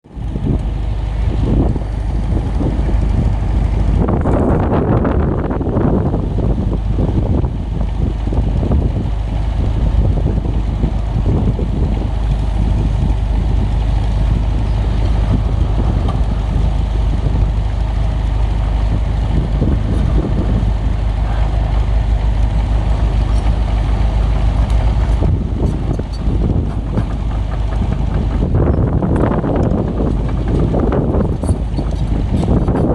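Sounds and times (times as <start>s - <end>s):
diesel engine running: 0.0s - 32.9s.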